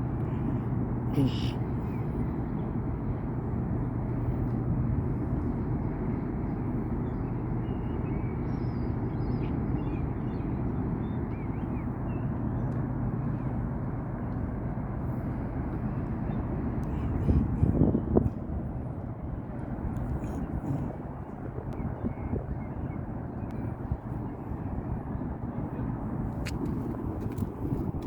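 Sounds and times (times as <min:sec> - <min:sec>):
wind-like noise: 0:13.7 - 0:28.0.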